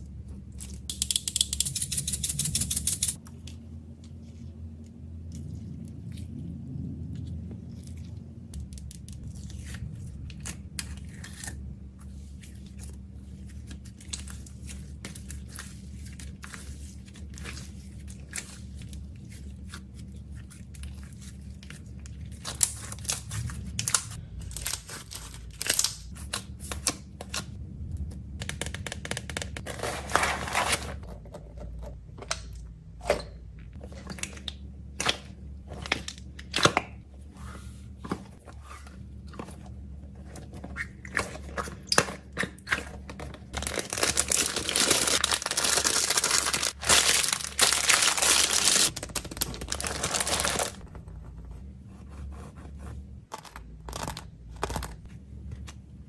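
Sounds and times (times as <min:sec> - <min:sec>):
plastic wrappers crinkling: 0:43.4 - 0:50.9.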